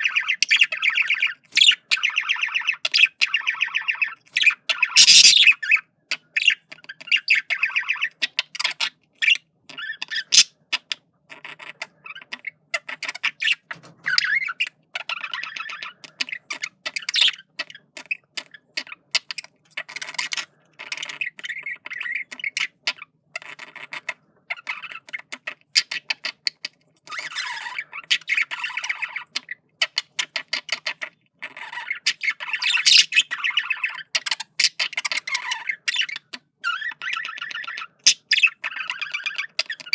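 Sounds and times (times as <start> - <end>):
budgie warbling and chattering: 4.8 - 5.5, 32.6 - 33.6.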